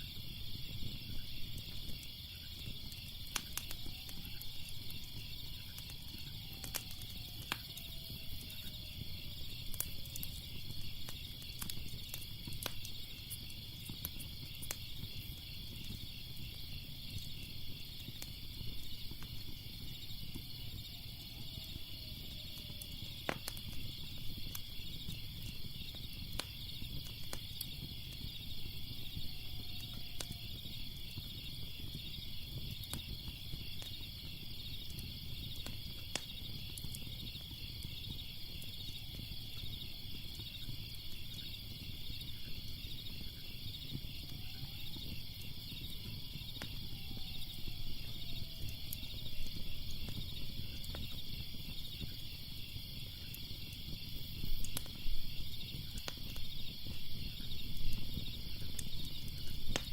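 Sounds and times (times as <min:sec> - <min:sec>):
crickets chirping: 0:00.0 - 0:59.9
fire crackling and popping: 0:00.0 - 0:59.9.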